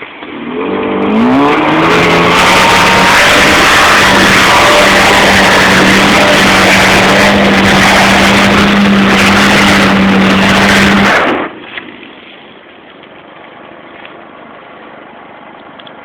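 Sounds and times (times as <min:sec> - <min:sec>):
car engine at high revs: 0:00.0 - 0:12.0.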